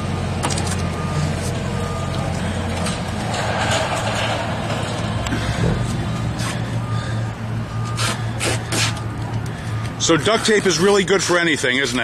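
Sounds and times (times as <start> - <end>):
vehicle engines humming: 0.0 - 12.0.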